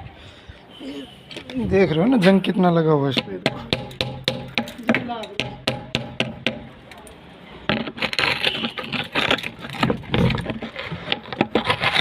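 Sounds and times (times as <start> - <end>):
scraping rust off metal: 7.6 - 12.0.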